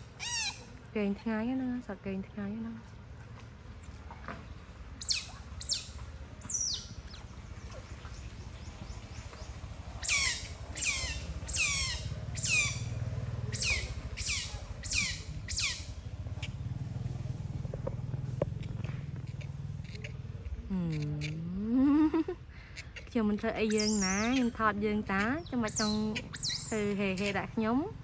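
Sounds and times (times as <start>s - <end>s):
otter chirping: 0.2s - 0.7s, 5.0s - 7.3s, 8.0s - 16.6s, 18.4s - 21.5s, 22.8s - 27.7s.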